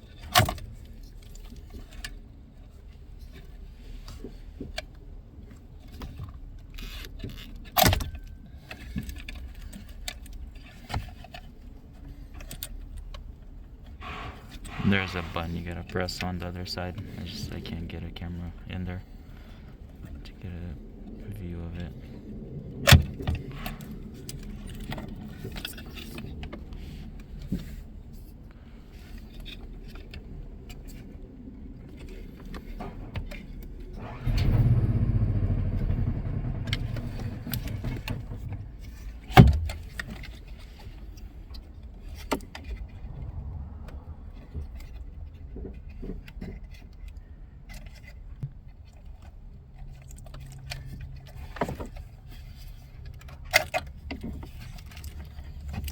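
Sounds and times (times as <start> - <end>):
wires and plastic rattling: 44.4 - 55.9.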